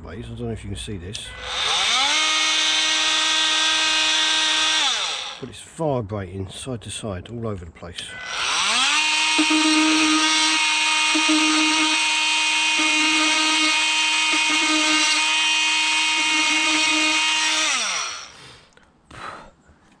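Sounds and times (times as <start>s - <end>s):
oscillating tool whine cutting: 1.3s - 5.5s, 8.1s - 18.4s.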